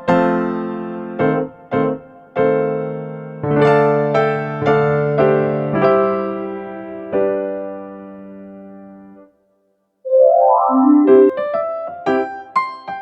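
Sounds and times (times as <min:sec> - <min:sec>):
electric piano melody: 0:10.1 - 0:13.0.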